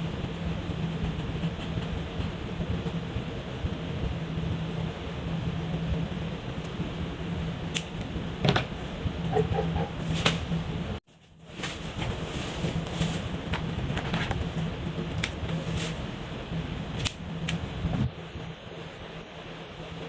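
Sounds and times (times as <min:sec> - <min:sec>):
low steady hum: 0:00.0 - 0:20.0
markers scratching on paper: 0:00.7 - 0:03.0.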